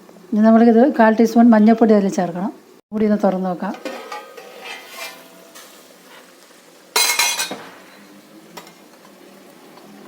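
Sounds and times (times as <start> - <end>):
pot lid clattering on rim: 3.8 - 5.6, 7.0 - 7.7.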